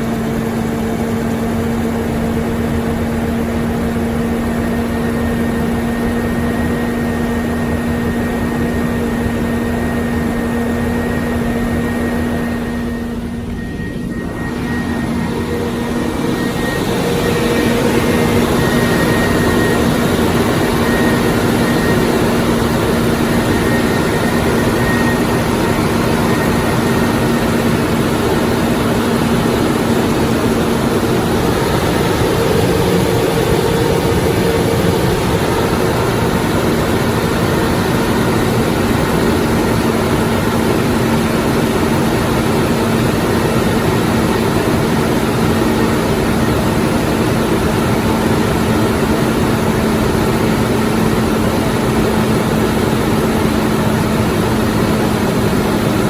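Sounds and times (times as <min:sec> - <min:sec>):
loud mechanical drone: 0:00.0 - 0:56.0.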